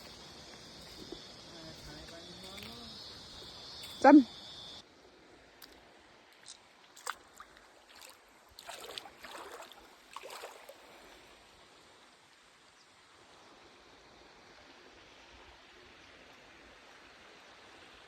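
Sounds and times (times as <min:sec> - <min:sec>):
faint running water: 0:00.0 - 0:18.0
short bursts of splashing: 0:06.4 - 0:11.1.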